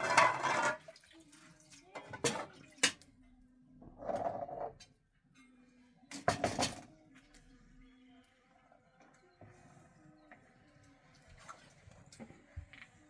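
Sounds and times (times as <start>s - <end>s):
objects knocking and clattering: 0.0s - 0.8s, 6.2s - 6.9s.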